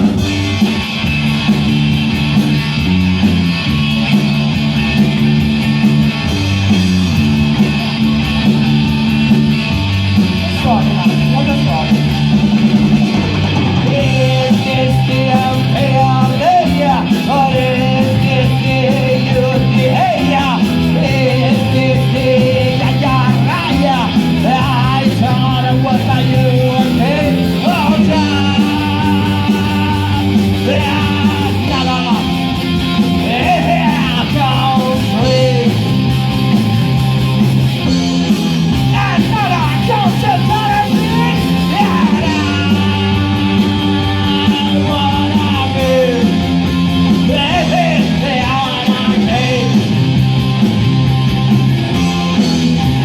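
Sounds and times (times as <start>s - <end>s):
punk rock band playing: 0.0s - 53.0s
shouted singing: 38.9s - 46.4s.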